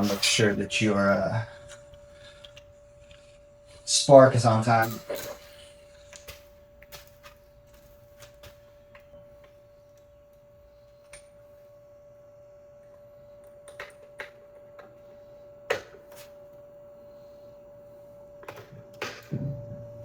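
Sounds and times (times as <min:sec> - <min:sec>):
faint steady hum: 0:00.0 - 0:20.0
hand tools clicking and knocking: 0:04.6 - 0:09.6.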